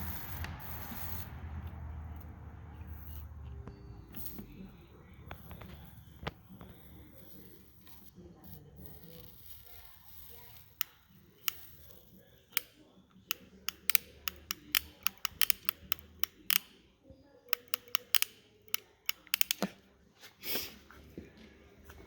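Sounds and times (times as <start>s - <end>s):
small tools and wires clicking: 8.8s - 16.8s, 17.5s - 19.7s.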